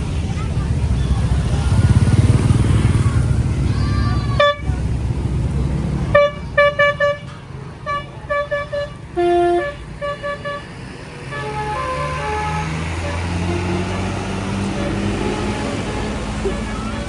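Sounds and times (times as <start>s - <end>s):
engine rumble: 0.0s - 17.0s
bus horn playing tooting tune: 4.3s - 5.0s, 6.1s - 17.0s.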